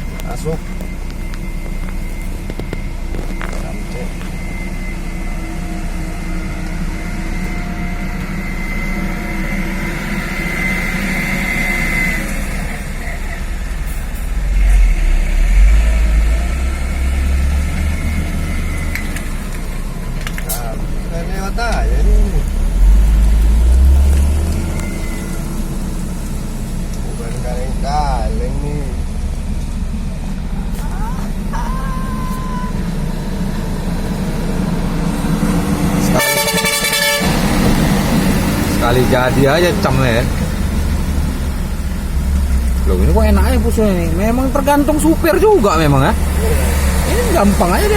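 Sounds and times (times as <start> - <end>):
diesel truck engine under load: 0.0 - 47.9
truck horn blast: 35.9 - 39.4.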